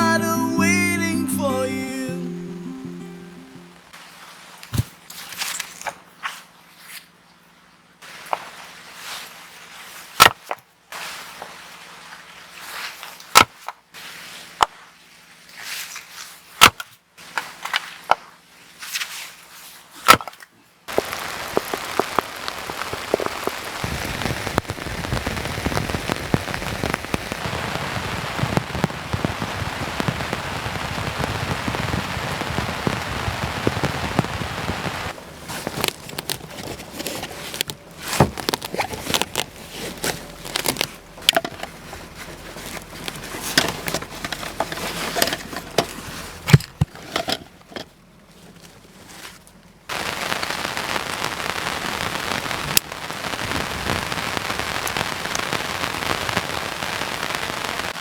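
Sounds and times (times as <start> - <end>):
heavy rain: 20.9 - 35.2, 49.9 - 58.0.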